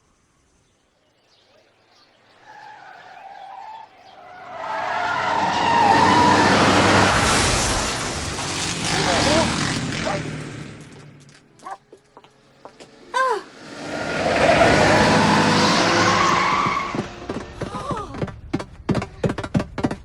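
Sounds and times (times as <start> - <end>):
faint chirps: 0.0 - 5.2
car engine and tyre noise: 0.6 - 20.0.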